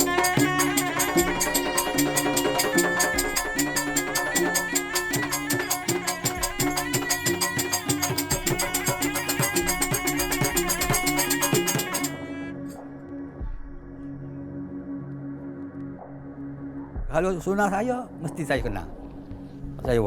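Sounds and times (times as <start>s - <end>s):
fast even percussion beat: 0.0s - 12.2s
double-reed oboe melody: 0.0s - 12.8s.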